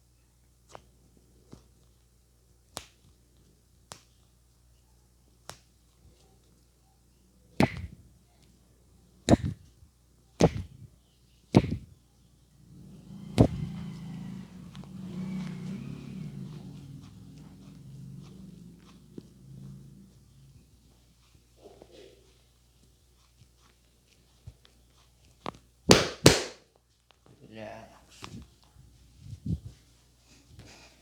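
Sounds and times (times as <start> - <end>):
hands slapping a head: 2.7 - 3.1, 3.8 - 4.2, 5.4 - 5.7, 7.6 - 8.0, 9.2 - 9.7, 10.4 - 10.8, 11.6 - 11.9, 12.7 - 19.4, 25.4 - 26.7
low uneven rumbling: 12.5 - 20.8.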